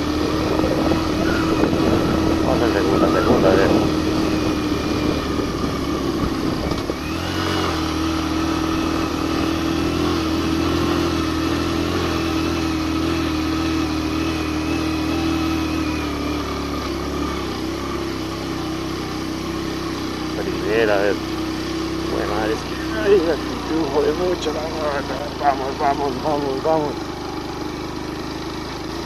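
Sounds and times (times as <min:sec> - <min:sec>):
motorcycle engine at high revs: 0:00.0 - 0:29.0.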